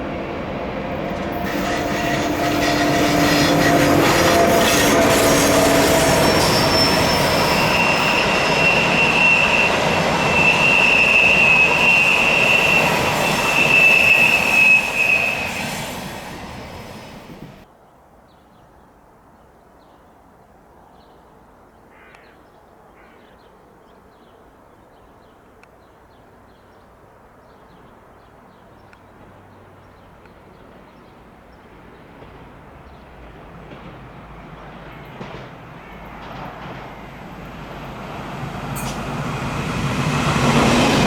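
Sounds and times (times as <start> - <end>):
train rumble: 0.0 - 17.7, 29.2 - 41.0.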